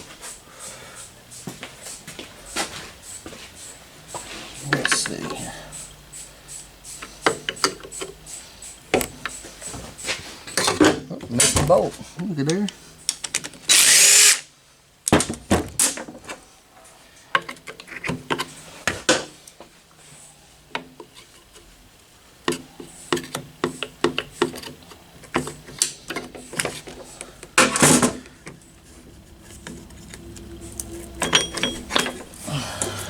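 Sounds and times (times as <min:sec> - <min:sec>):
power driver whirring: 0:13.7 - 0:14.4
wrenches and metal parts clinking: 0:29.5 - 0:33.0.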